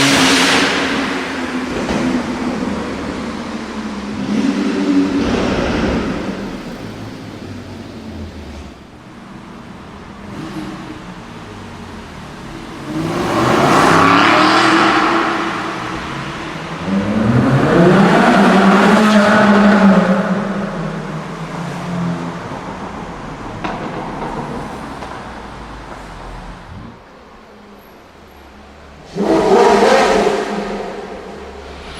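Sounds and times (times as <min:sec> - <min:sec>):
car engine accelerating hard: 0:00.0 - 0:27.0, 0:28.3 - 0:31.9.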